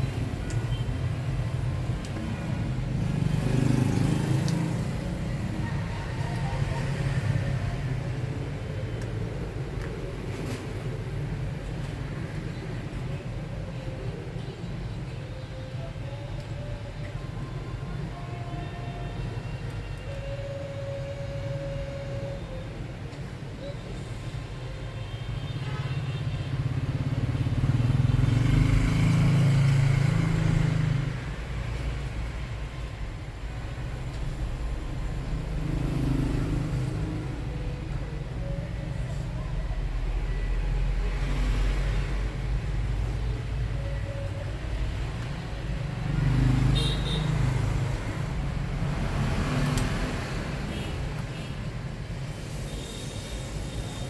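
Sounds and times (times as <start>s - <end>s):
road traffic rumble: 0.0s - 54.0s
vehicle engine passing by: 2.4s - 8.0s, 26.9s - 32.5s, 34.2s - 37.6s, 45.7s - 50.7s.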